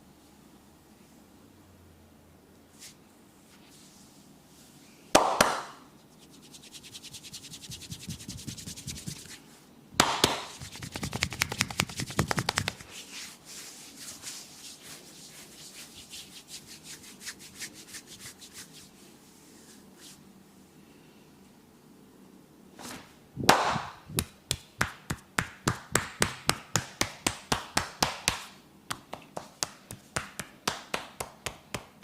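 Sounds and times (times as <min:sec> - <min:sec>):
hands rubbing hair: 0:02.7 - 0:04.7, 0:05.9 - 0:20.3, 0:22.9 - 0:32.0
sharp smacks: 0:10.0 - 0:10.6, 0:23.4 - 0:26.2.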